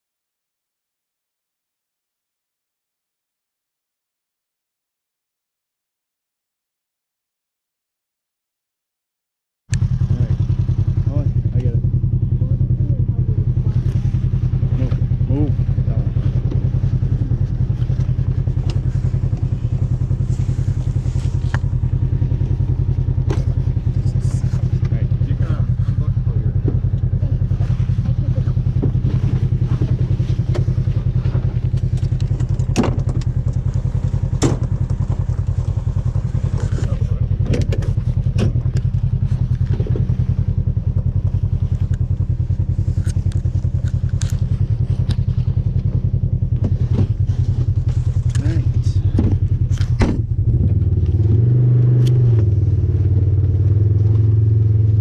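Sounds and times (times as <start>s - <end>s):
small engine running: 9.8s - 55.0s
knocks and clatter: 28.8s - 35.7s, 49.1s - 50.9s.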